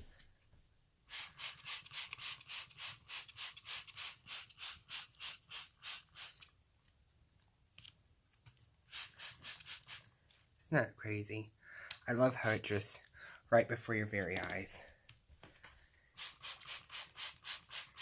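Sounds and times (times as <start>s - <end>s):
spray bottle hissing sprays: 1.1s - 6.5s, 8.9s - 10.1s, 16.1s - 18.0s.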